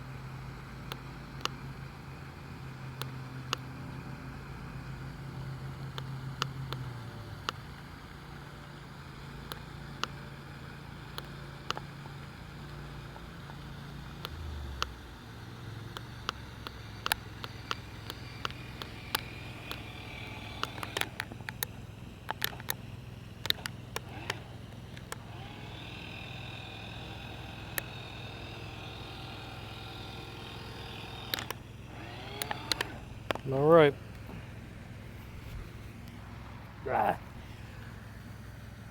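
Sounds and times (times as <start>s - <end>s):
small electric motor humming: 0.0s - 38.9s
sharp clicks and knocks: 15.9s - 34.4s.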